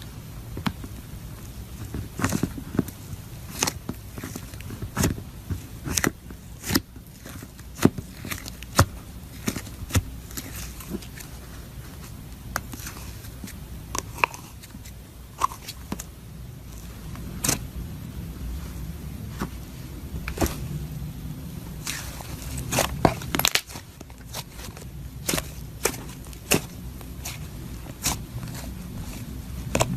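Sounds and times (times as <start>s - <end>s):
low steady hum: 0.0s - 29.9s
crunchy slime crackling: 0.8s - 29.9s.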